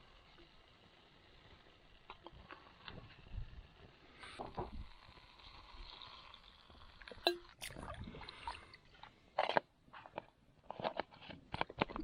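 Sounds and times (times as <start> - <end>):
faint steady hiss: 0.0 - 9.4.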